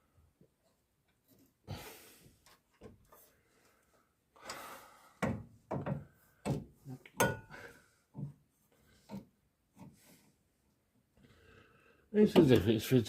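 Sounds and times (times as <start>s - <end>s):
metal clunks and knocks: 5.2s - 7.6s.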